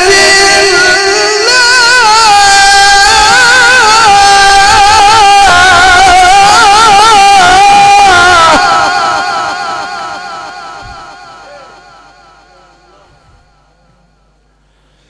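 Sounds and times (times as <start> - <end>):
man chanting recitation: 0.0 - 9.8.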